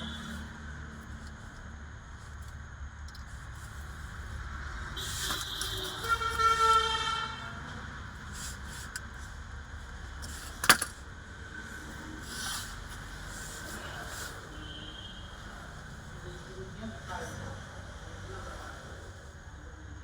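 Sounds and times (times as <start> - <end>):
vehicle horn: 0.0 - 0.6, 4.9 - 7.8, 14.5 - 15.5.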